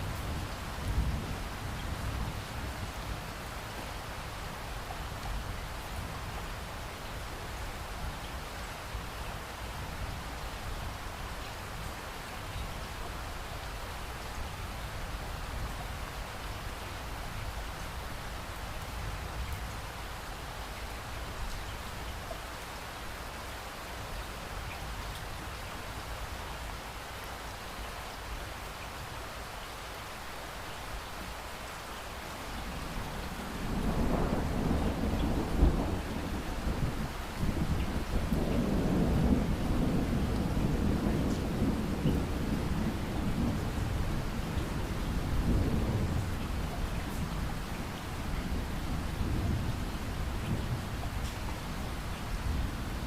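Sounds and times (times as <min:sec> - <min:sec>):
steady rain falling: 0:00.0 - 0:53.0
thunder rumbling: 0:32.9 - 0:53.0.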